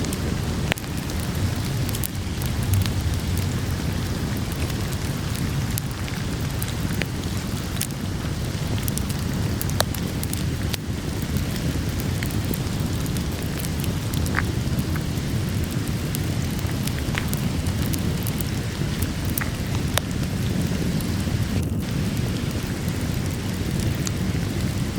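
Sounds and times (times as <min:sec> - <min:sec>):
low rumble: 0:00.0 - 0:07.4
steady rain: 0:00.0 - 0:24.9
wood fire crackling: 0:00.0 - 0:24.9.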